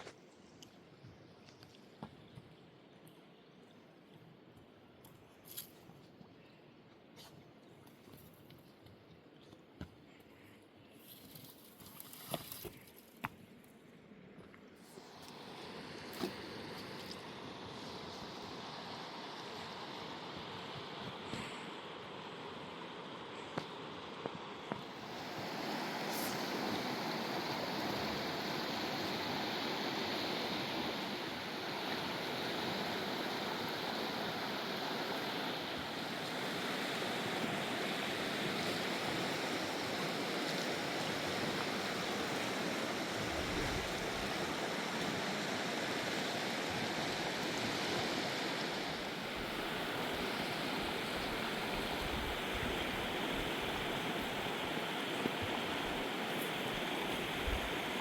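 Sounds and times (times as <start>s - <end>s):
river rushing: 15.0s - 58.0s.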